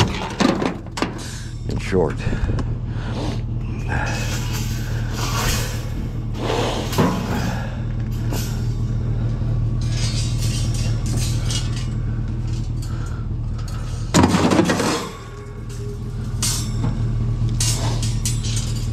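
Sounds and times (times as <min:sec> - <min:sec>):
loud metal clatter: 0:00.0 - 0:01.4, 0:04.1 - 0:18.9
scrap metal scraping and knocking: 0:00.0 - 0:01.4, 0:04.1 - 0:09.0, 0:09.7 - 0:13.0, 0:13.6 - 0:18.9
steady low hum: 0:00.0 - 0:18.9
sharp metal clank: 0:14.1 - 0:18.9.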